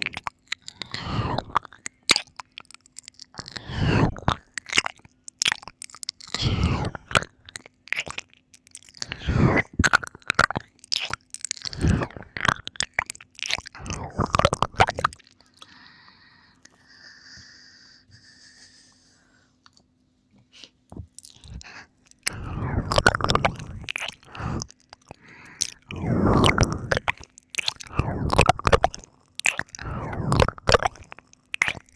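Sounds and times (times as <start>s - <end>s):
mouth clicks: 0.0s - 15.8s, 20.6s - 31.9s
wet mouth licking sounds: 0.0s - 15.8s, 20.6s - 31.9s
soft drawn-out breath: 15.5s - 19.8s.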